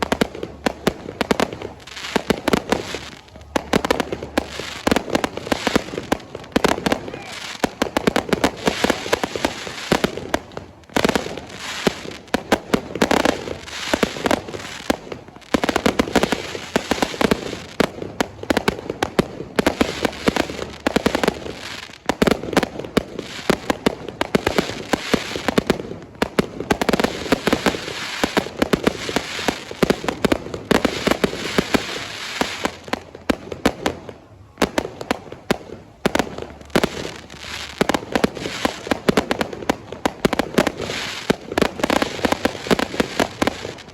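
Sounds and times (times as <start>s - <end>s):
fireworks cracking and popping: 0.0s - 43.9s.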